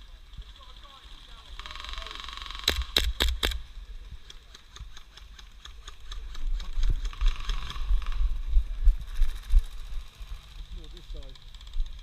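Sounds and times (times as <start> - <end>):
airsoft gun shots: 2.4 - 3.6
low rumble: 6.1 - 12.0.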